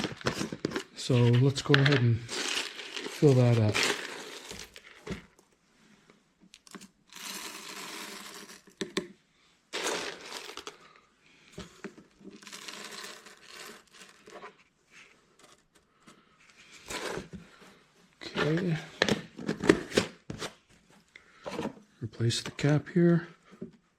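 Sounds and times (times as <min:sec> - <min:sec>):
coffee beans poured from crinkly bag: 0:01.0 - 0:05.0, 0:07.1 - 0:08.8, 0:09.7 - 0:10.8, 0:12.4 - 0:14.3
beans dropping clicks: 0:01.6 - 0:05.0, 0:06.5 - 0:09.1, 0:09.7 - 0:11.0, 0:12.3 - 0:14.3.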